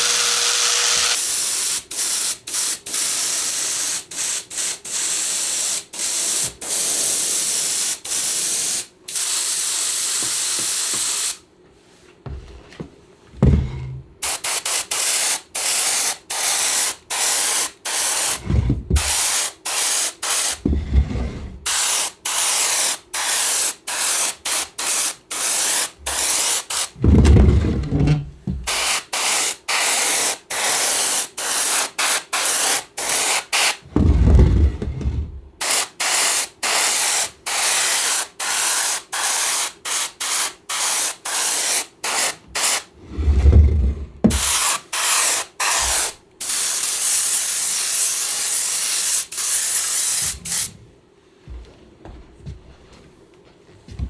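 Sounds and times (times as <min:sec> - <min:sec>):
low thuds: 0:27.0 - 0:28.7, 0:33.9 - 0:35.5.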